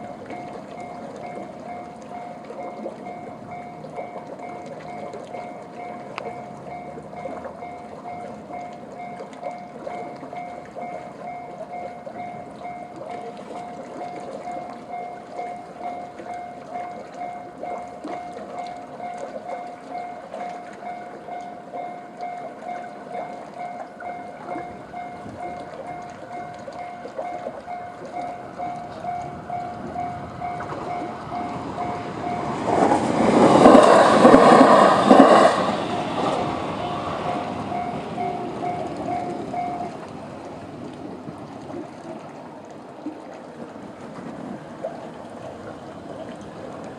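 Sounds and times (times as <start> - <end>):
level crossing warning bell: 0.0 - 40.6
electric train passing: 0.0 - 46.9.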